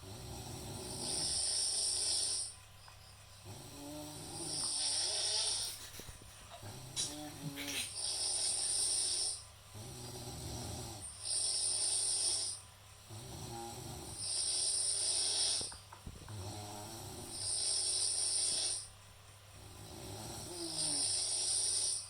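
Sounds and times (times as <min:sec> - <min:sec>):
person snoring: 0:00.0 - 0:02.5, 0:03.4 - 0:05.8, 0:06.6 - 0:15.7, 0:16.3 - 0:18.9, 0:19.6 - 0:22.0
hissing breath: 0:14.2 - 0:15.8.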